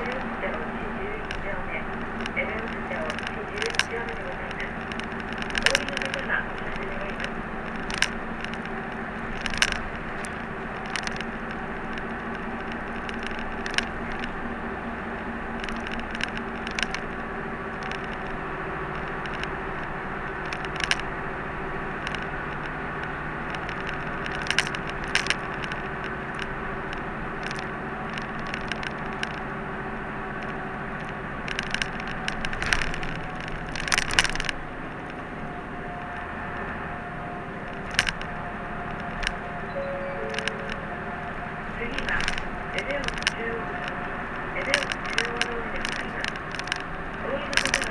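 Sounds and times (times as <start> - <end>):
cabin fittings clicking and rattling: 0.0 - 36.8, 37.6 - 39.7, 40.3 - 47.9
bus engine hum: 0.0 - 47.9
road noise: 0.0 - 47.9.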